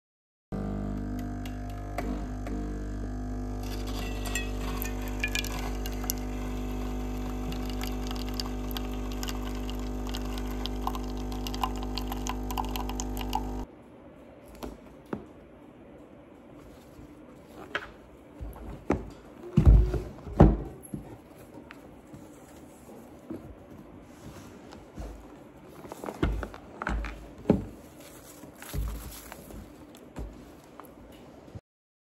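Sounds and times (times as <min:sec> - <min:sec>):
machine hum: 0:00.5 - 0:14.0.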